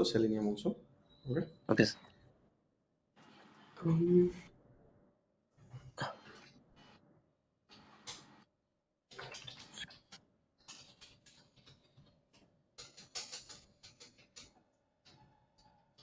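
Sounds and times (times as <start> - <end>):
computer keys typing: 9.1 - 12.2, 12.8 - 16.0.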